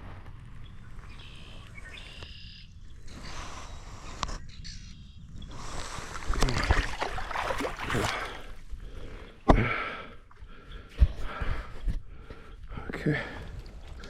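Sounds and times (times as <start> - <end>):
water splashing and sloshing: 5.6 - 9.3.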